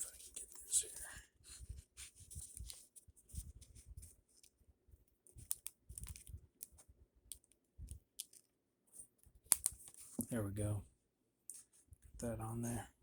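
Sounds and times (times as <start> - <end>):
keyboard and mouse clicks: 5.3 - 8.5, 9.5 - 10.3.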